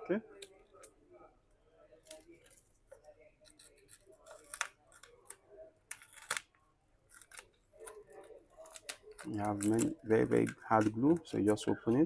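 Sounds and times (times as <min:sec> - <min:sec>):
phone glass cracking and snapping: 0:03.5 - 0:06.5.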